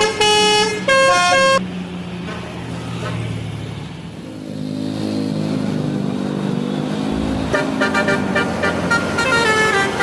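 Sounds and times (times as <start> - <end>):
bus horn playing melody: 0.0 - 1.6, 7.5 - 10.0.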